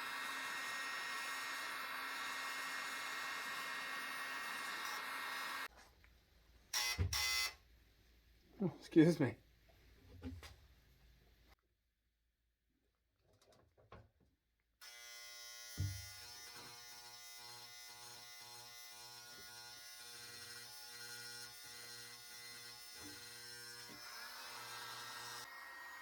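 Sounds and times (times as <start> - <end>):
power tool motor buzzing: 0.0 - 5.7, 6.8 - 7.6, 14.8 - 26.0.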